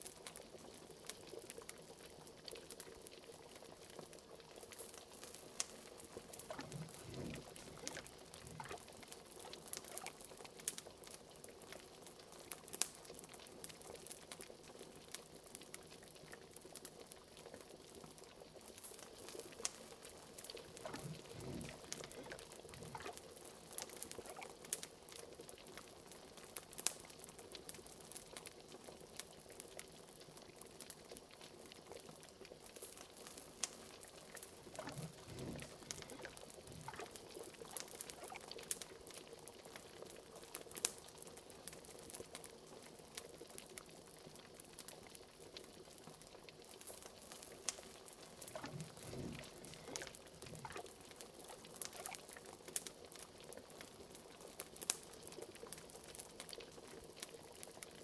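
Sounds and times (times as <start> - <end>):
liquid bubbling in a pot: 0.2 - 26.5, 30.4 - 58.0
wood fire crackling: 4.6 - 10.1, 18.7 - 24.4, 32.8 - 38.9, 46.8 - 52.9.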